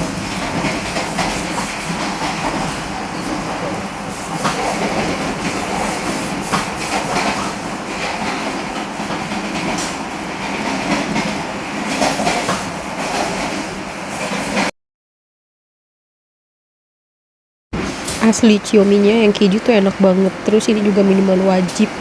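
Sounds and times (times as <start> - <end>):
train carriage rumble: 0.0 - 14.7, 17.8 - 22.0
wheels clicking over rails: 0.0 - 14.7.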